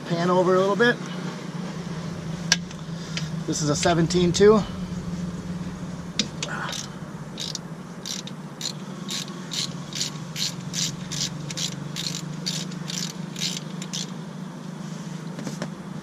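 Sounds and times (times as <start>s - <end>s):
steady low hum: 1.0s - 13.5s
ratchet clicking: 6.7s - 14.2s.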